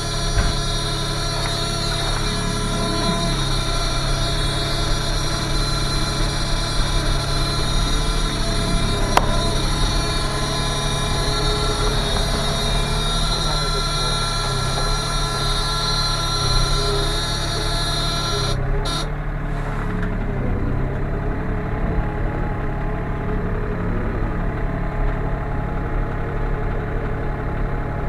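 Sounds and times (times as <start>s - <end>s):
diesel engine running: 0.0s - 28.0s.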